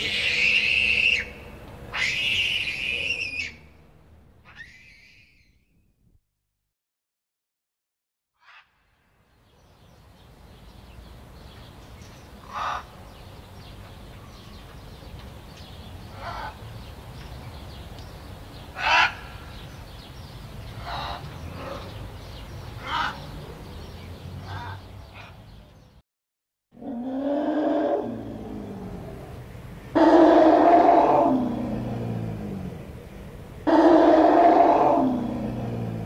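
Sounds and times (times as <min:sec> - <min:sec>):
birds calling: 0:00.0 - 0:03.8, 0:09.5 - 0:26.0
outdoor ambience: 0:00.0 - 0:06.2, 0:08.4 - 0:26.0, 0:26.7 - 0:36.0.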